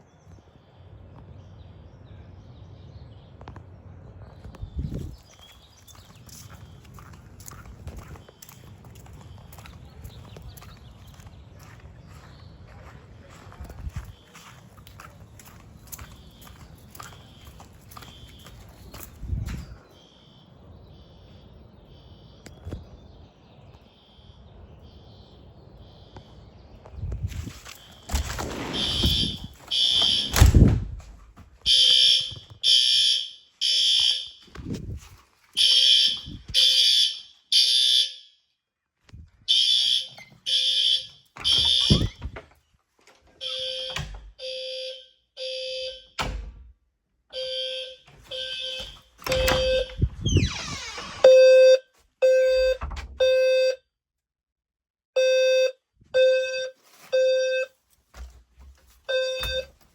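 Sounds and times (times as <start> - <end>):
fire alarm beeping: 16.0 - 22.8, 23.7 - 26.3, 27.7 - 30.5, 31.7 - 34.5, 35.6 - 38.4, 39.5 - 42.4, 43.4 - 46.2, 47.3 - 53.8, 55.2 - 57.8, 59.1 - 59.8.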